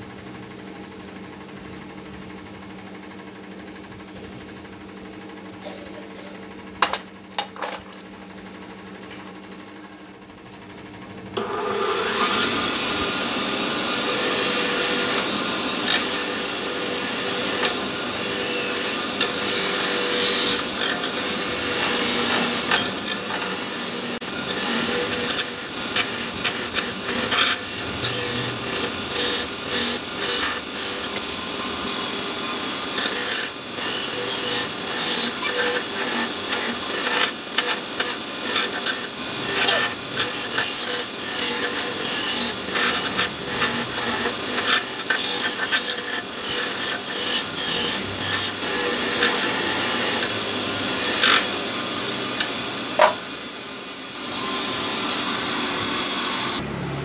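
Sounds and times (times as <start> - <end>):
power tool scraping metal: 11.4 - 56.6.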